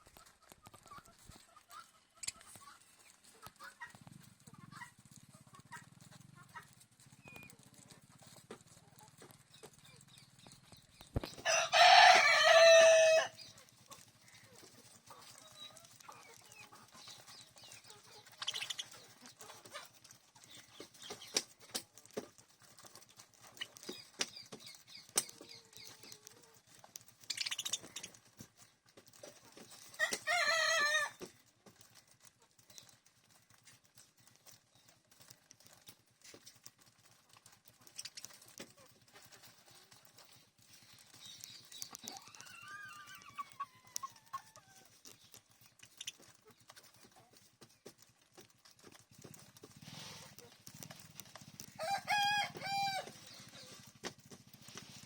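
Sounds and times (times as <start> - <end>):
small birds chirping: 0.0 - 55.0
rooster crowing: 11.4 - 13.4, 51.8 - 53.2.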